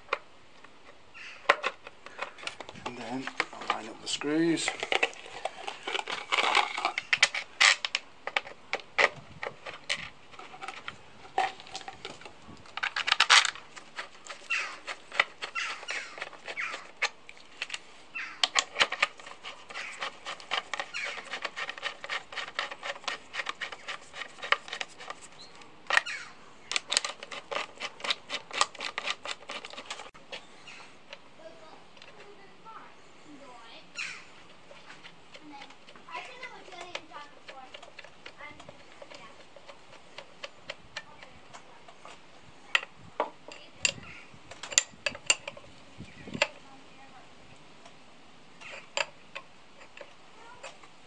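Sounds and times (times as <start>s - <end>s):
metal tools clicking and rattling: 41.9s - 45.6s.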